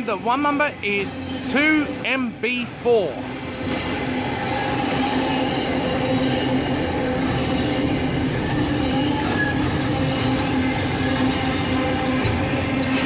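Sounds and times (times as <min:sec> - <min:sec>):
steady tones: 0:00.0 - 0:13.0
train wagons rolling on track: 0:02.6 - 0:13.0.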